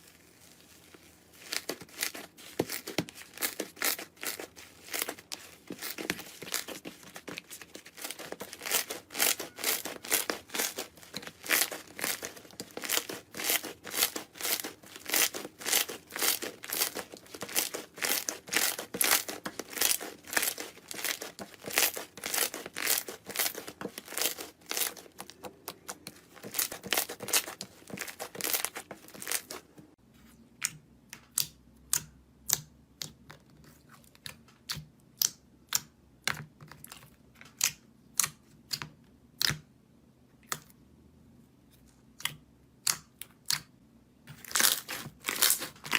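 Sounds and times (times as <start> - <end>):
crunchy slime crackling and popping: 0.0 - 29.7, 44.3 - 45.9.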